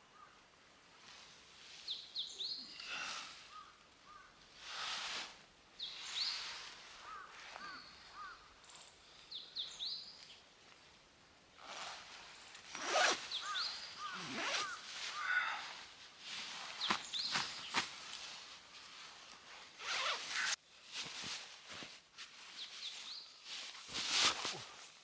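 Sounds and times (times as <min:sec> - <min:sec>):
small birds chirping: 0:01.8 - 0:04.3, 0:05.8 - 0:10.8, 0:12.2 - 0:20.6, 0:22.4 - 0:24.6.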